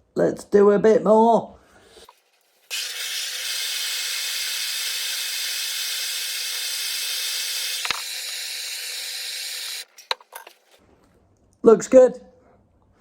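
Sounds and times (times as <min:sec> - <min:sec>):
blowtorch flame hissing: 0:02.7 - 0:09.9.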